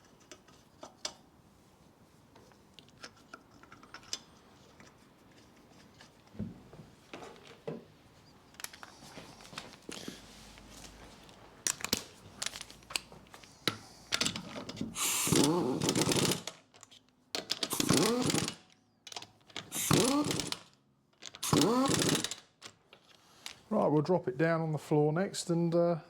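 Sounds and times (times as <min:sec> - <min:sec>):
power tool running in bursts: 0:15.0 - 0:16.5, 0:17.7 - 0:18.6, 0:19.7 - 0:20.6, 0:21.4 - 0:22.4.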